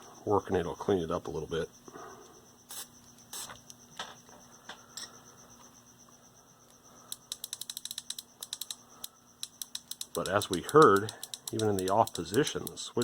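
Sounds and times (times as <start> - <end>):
switch clicking rapidly: 9.5 - 12.8.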